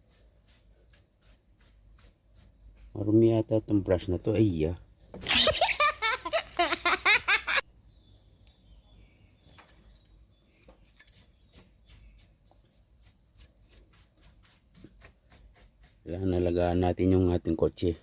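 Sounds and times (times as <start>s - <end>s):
brush rubbing steering wheel: 0.0s - 2.8s, 11.1s - 18.0s.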